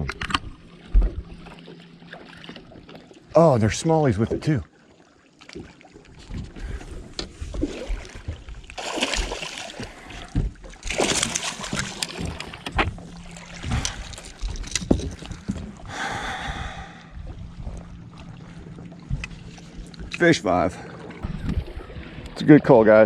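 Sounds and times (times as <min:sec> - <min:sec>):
knocks and clicks against boat: 0:00.0 - 0:03.1, 0:05.4 - 0:22.4
water splashing and sloshing: 0:00.0 - 0:23.0
steady low hum: 0:06.4 - 0:23.0.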